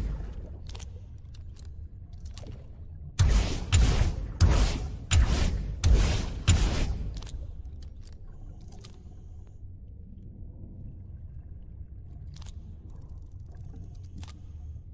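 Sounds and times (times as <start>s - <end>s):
low steady rumble: 0.0s - 14.9s
underwater gunshot: 3.2s - 7.4s.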